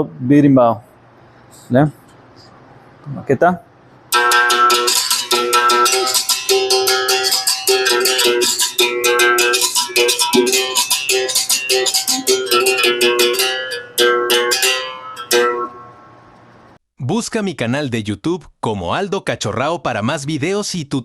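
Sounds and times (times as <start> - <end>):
berimbau playing: 4.1 - 16.4.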